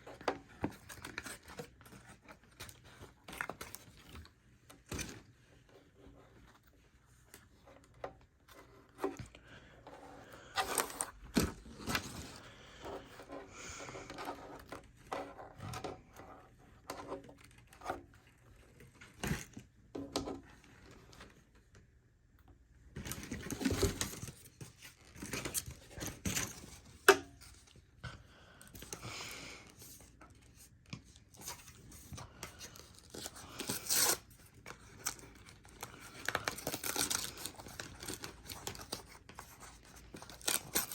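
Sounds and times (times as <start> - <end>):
paper tearing and rustling: 32.8 - 40.9.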